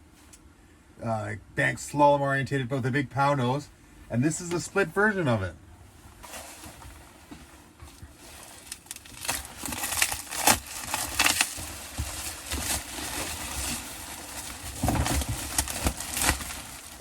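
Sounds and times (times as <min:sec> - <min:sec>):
packaging rustling and crinkling: 0:06.2 - 0:17.0.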